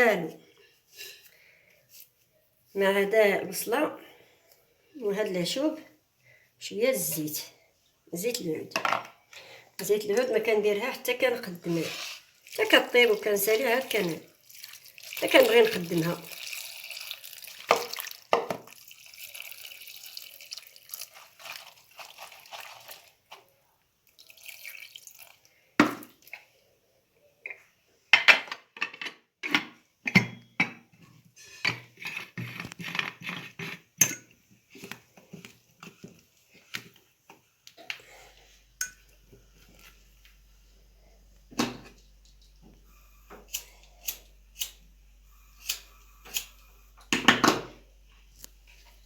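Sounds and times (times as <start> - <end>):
water running from a tap: 12.1 - 23.2, 24.1 - 26.1
pots and utensils clinking: 31.6 - 34.4.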